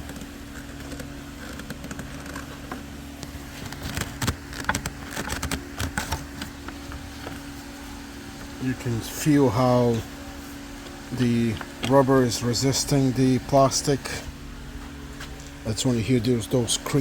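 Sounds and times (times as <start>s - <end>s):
rubber seals creaking on plastic: 0.0s - 7.0s
steady background hum: 0.0s - 17.0s.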